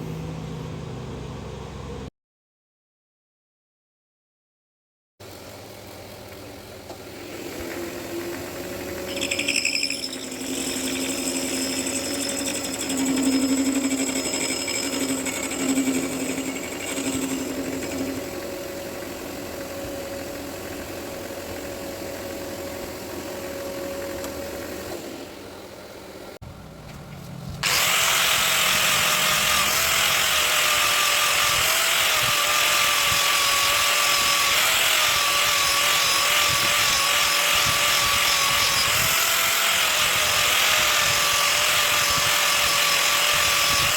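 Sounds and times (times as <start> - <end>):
power tool grinding hiss: 7.2 - 18.2, 27.6 - 43.9.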